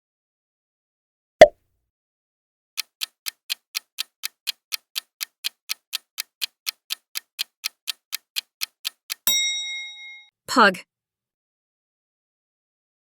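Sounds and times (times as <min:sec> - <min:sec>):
countdown timer ticking: 0:02.8 - 0:10.3.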